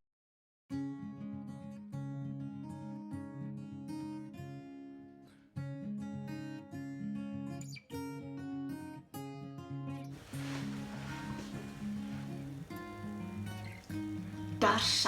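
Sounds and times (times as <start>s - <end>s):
acoustic guitar strumming chords: 10.1s - 15.0s.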